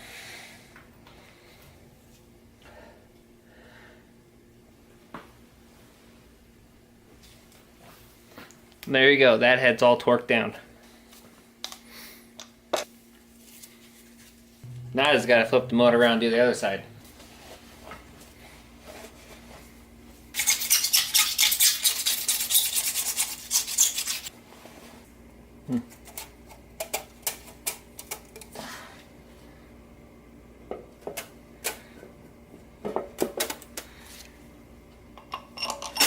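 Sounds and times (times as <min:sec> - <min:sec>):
tools and metal parts clinking: 0:35.2 - 0:36.0.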